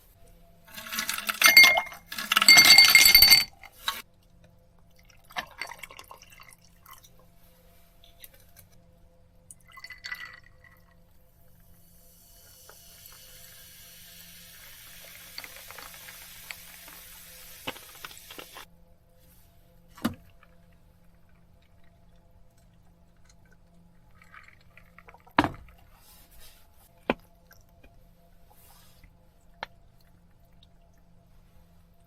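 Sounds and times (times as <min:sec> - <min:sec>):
water running into sink: 0:12.5 - 0:18.6.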